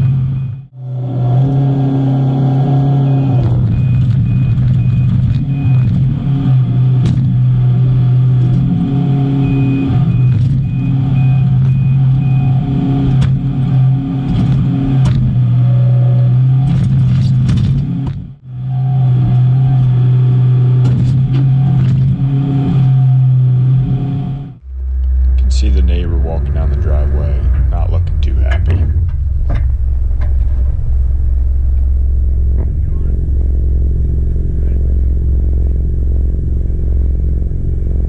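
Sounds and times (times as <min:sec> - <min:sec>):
reversing alarm beeping: 0:00.0 - 0:00.8, 0:02.6 - 0:07.0, 0:08.8 - 0:13.2
excavator diesel engine: 0:00.0 - 0:38.0.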